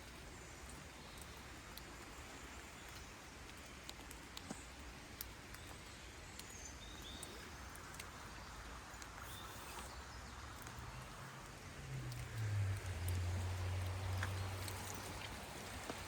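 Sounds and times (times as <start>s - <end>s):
light clicks and snaps: 2.9s - 8.2s, 10.5s - 16.0s.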